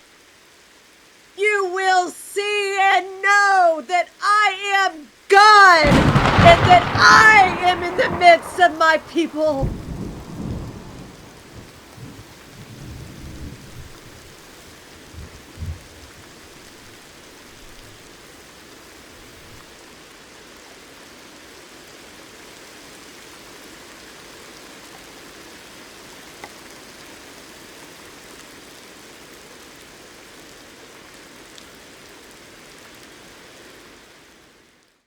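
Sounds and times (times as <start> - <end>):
steady rain falling: 0.0 - 35.0
low thunder rumble: 5.8 - 17.0.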